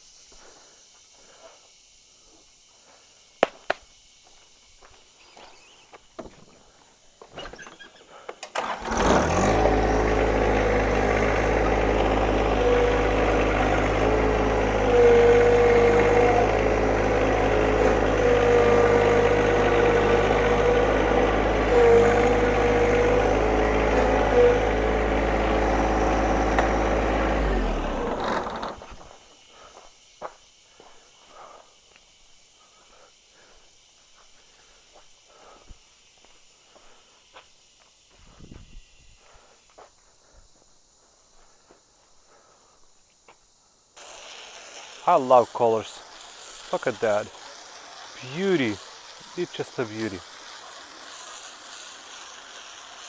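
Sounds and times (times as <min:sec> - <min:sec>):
pressure washer running: 0:08.6 - 0:28.9, 0:44.0 - 0:53.0.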